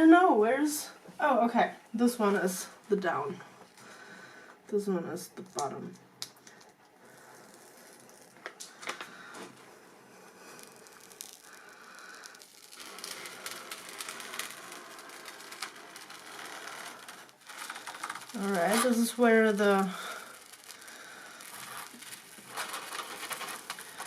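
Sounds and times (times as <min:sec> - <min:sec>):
canvas and plastic film rustling: 0:07.1 - 0:24.0.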